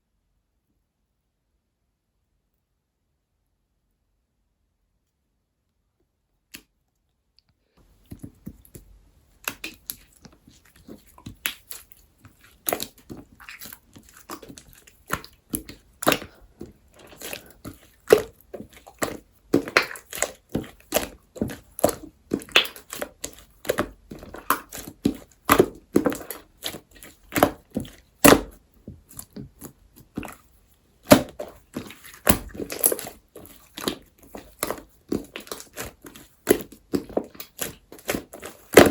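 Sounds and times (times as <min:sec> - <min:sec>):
slime squished by hand: 0:08.0 - 0:38.9.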